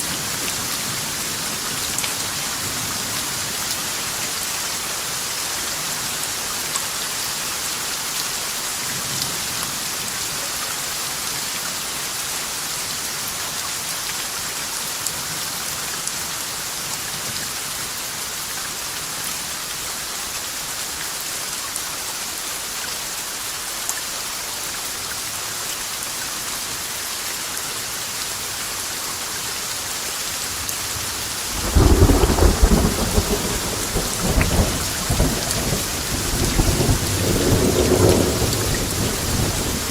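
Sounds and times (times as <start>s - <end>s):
steady rain falling: 0.0s - 39.9s
rolling thunder: 31.5s - 39.9s.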